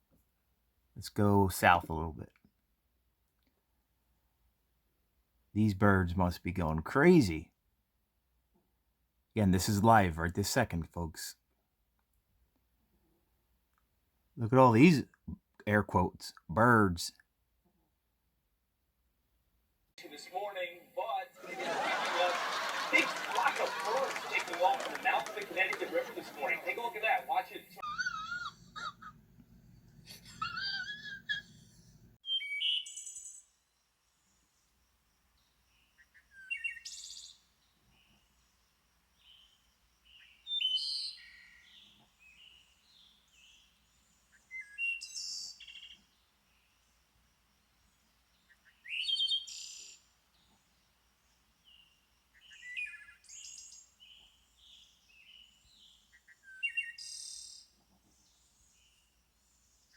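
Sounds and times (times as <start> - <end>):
birds chirping: 20.0 - 33.5, 47.6 - 59.9
high bird chirping: 30.2 - 33.5, 39.2 - 43.7, 48.5 - 50.0.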